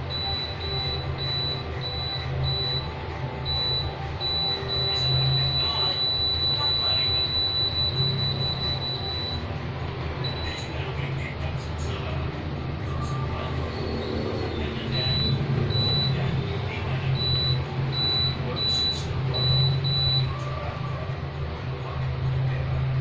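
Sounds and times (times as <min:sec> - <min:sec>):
air conditioner humming: 0:00.0 - 0:23.0.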